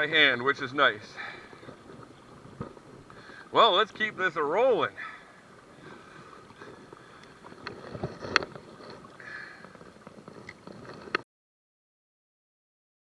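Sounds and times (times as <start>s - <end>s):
fishing gear clicks and knocks: 0.0s - 4.0s, 4.8s - 11.2s.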